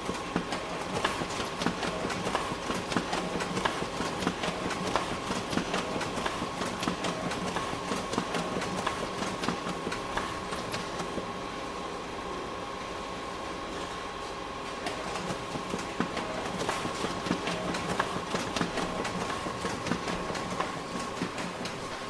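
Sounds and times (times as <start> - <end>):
photocopier clicks and clatter: 14.8 - 22.0
photocopier humming: 15.0 - 22.0.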